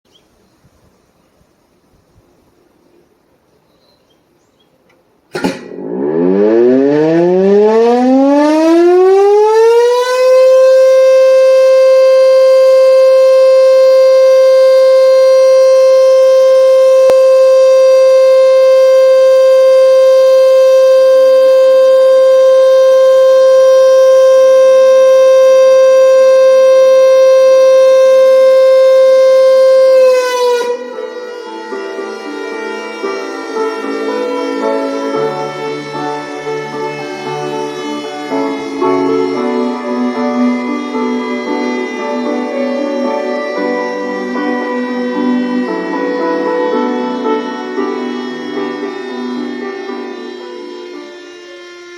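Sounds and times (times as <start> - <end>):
motor siren winding up: 5.4 - 31.6.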